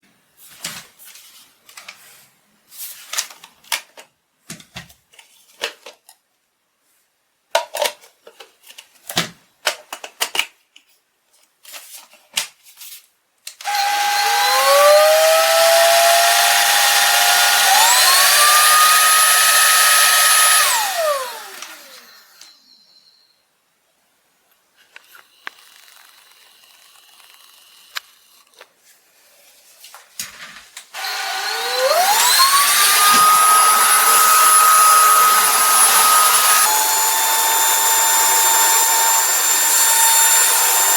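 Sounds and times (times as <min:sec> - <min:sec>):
vacuum cleaner motor whine: 0:13.6 - 0:22.6, 0:31.0 - 0:40.9.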